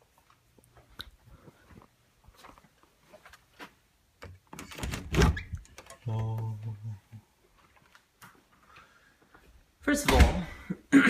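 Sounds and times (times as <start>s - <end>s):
footsteps: 0.0s - 3.9s, 7.4s - 10.5s
door thud: 4.6s - 5.5s, 10.0s - 10.6s.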